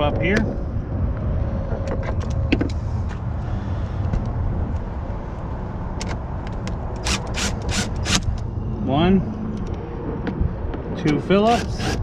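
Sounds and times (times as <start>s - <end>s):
low background rumble: 0.0s - 12.0s.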